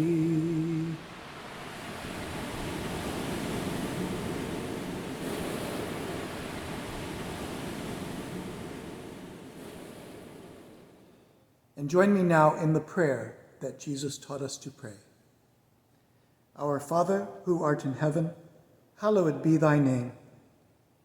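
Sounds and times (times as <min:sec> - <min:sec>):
ocean waves rushing: 0:00.0 - 0:11.2.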